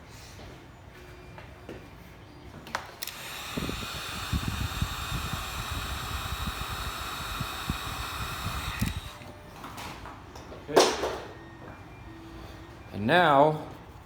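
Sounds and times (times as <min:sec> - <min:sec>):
heat gun blowing: 0:03.0 - 0:09.3
heat gun switch click: 0:06.7 - 0:09.3.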